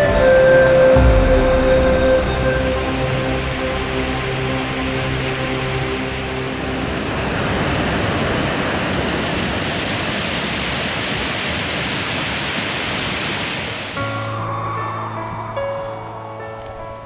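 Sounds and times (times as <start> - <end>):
background music: 0.0 - 7.8, 14.0 - 17.0
waterfall roaring: 0.0 - 14.4.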